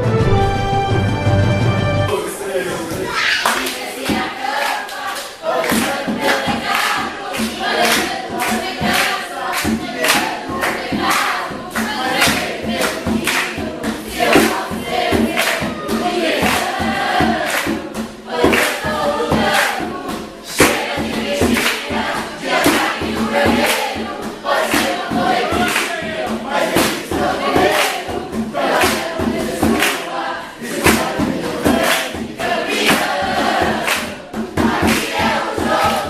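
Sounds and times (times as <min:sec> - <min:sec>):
band playing: 0:00.0 - 0:03.3
many voices singing together: 0:02.1 - 0:36.0
steady drum beat: 0:03.7 - 0:36.0.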